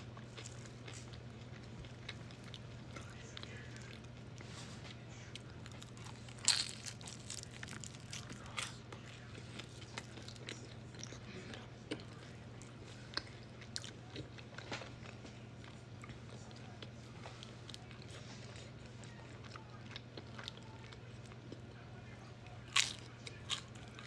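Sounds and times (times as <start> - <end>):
wet chewing: 0.2 - 4.5, 5.4 - 11.2
crunchy food bite: 5.4 - 8.8, 22.7 - 24.0.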